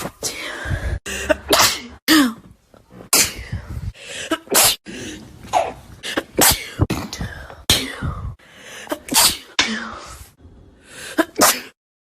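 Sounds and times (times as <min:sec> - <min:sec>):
person sneezing: 0:01.2 - 0:02.4, 0:08.9 - 0:10.2, 0:11.2 - 0:11.8.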